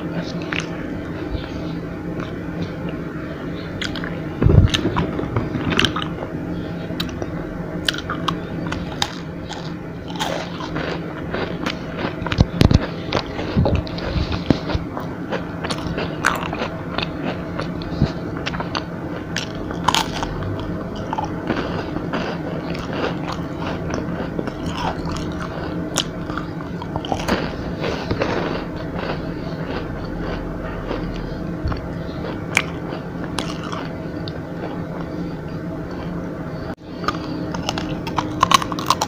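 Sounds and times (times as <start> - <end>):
crunchy chewing: 0.0 - 39.0
mouth smacking: 3.7 - 6.2.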